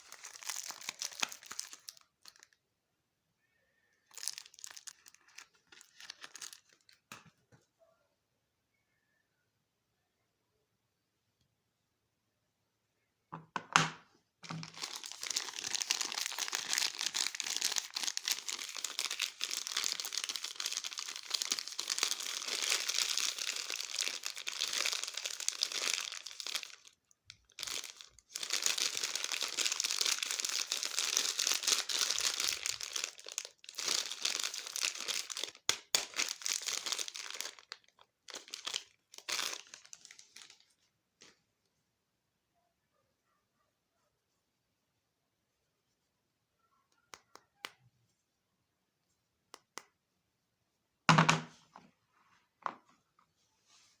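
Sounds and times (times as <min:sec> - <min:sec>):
packaging crinkling and tearing: 0:00.0 - 0:02.6, 0:04.0 - 0:07.1, 0:14.4 - 0:40.7.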